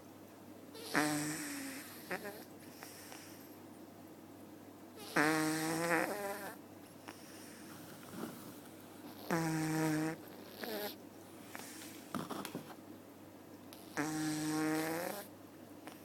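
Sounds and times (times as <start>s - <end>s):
cat snoring: 0.7s - 3.5s, 5.0s - 8.5s, 9.1s - 12.5s, 13.8s - 16.0s
soft breaths: 0.8s - 3.7s, 6.1s - 9.3s, 10.2s - 12.8s.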